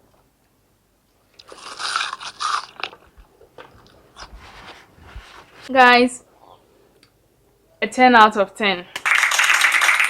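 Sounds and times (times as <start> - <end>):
crisp toast crunch: 1.4 - 4.3
crunching chews: 1.4 - 4.3.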